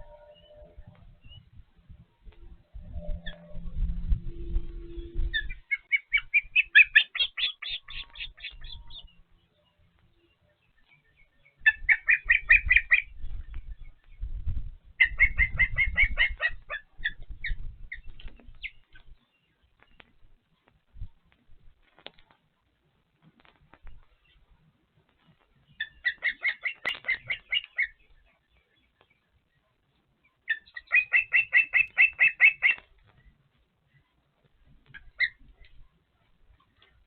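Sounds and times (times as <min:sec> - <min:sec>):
low rumbling noise: 0:00.0 - 0:05.7
steady low hum: 0:00.0 - 0:06.6
ospreys chirping: 0:04.3 - 0:09.2, 0:11.5 - 0:13.2, 0:25.7 - 0:28.2, 0:30.5 - 0:32.9, 0:34.9 - 0:35.7.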